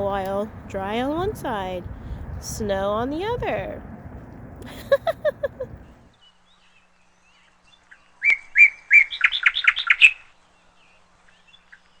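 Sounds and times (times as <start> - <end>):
songbird singing: 0.0 - 6.1.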